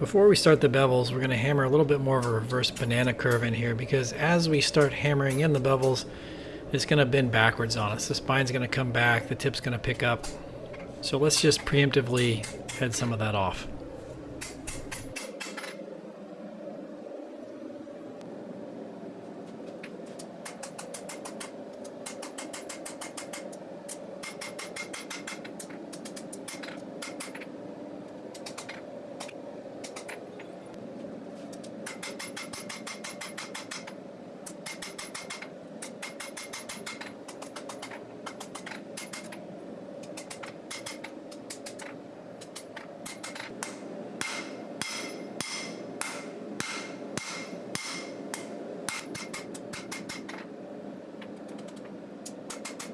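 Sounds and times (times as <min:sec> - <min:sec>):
steady hum: 0:00.0 - 0:52.9
hammer striking hot steel: 0:24.2 - 0:27.4, 0:31.8 - 0:33.9, 0:34.6 - 0:39.3, 0:40.2 - 0:41.9, 0:42.5 - 0:50.4.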